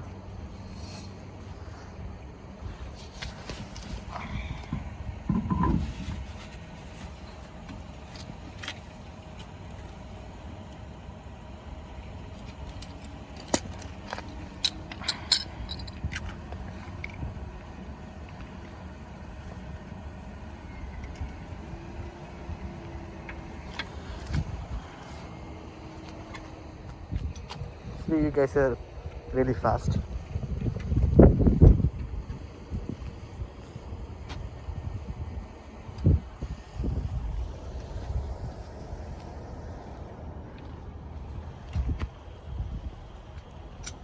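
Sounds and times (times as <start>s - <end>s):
vehicle engine idling: 0.0s - 44.0s
metallic clinks of tools: 13.8s - 16.4s.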